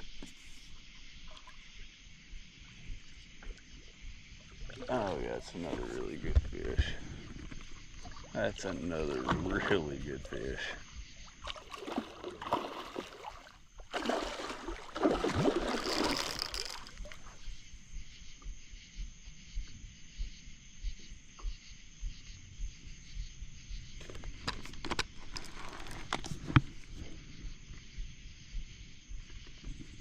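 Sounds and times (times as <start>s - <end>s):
water lapping: 4.5s - 17.6s
fish thrashing and water splashing: 11.3s - 17.4s.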